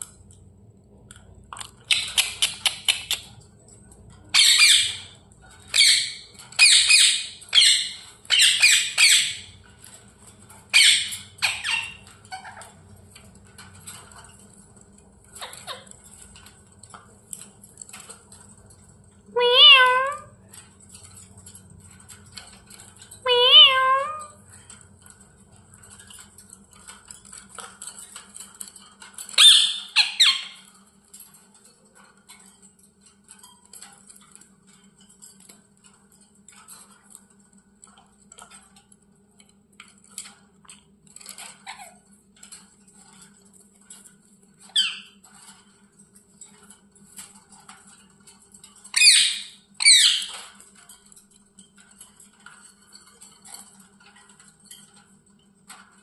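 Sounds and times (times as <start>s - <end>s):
parrot chirping: 1.8s - 3.3s, 4.3s - 9.5s, 10.7s - 12.7s, 19.4s - 20.3s, 23.2s - 24.4s, 29.4s - 30.7s, 44.7s - 45.2s, 49.0s - 50.5s
parrot squawking loudly: 4.3s - 5.0s, 5.8s - 9.5s, 10.8s - 12.6s, 19.4s - 20.3s, 23.3s - 24.4s, 29.4s - 30.6s, 49.0s - 50.4s.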